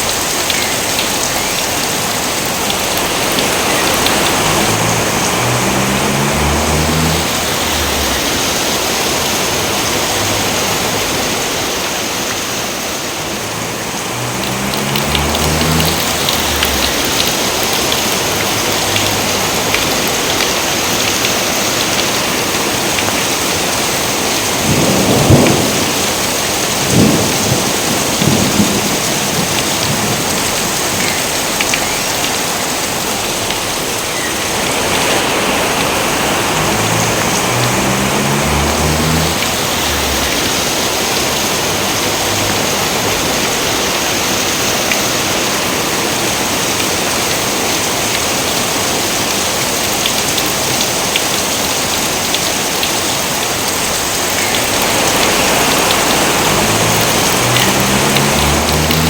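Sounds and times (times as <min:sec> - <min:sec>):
heavy rain: 0:00.0 - 0:59.0
thunder rumbling: 0:02.5 - 0:11.8, 0:24.4 - 0:31.3, 0:34.6 - 0:43.3.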